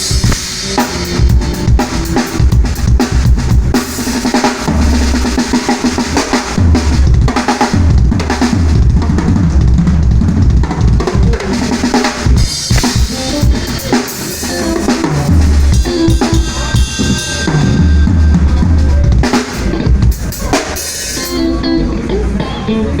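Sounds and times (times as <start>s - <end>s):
bass drum: 0.0s - 5.5s, 6.5s - 13.9s, 14.5s - 20.5s
cymbal wash: 0.0s - 6.6s
snare drum and rimshots: 0.0s - 6.6s, 11.6s - 17.7s.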